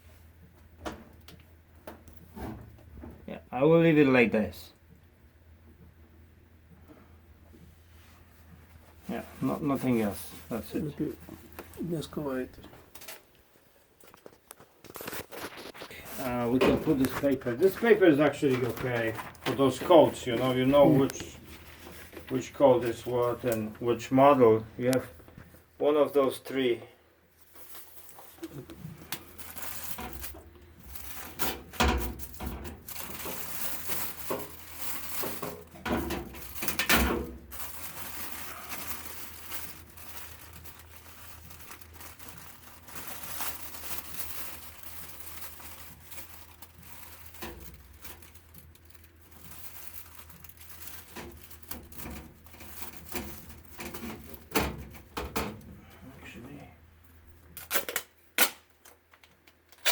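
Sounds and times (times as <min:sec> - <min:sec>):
paper crinkling: 0:14.0 - 0:24.1, 0:27.4 - 0:55.6.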